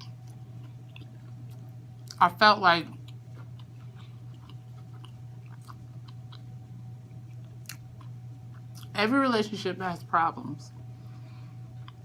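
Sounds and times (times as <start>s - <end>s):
person chewing food: 0.0s - 2.2s, 3.0s - 8.9s, 11.1s - 12.0s
steady low hum: 0.0s - 12.0s.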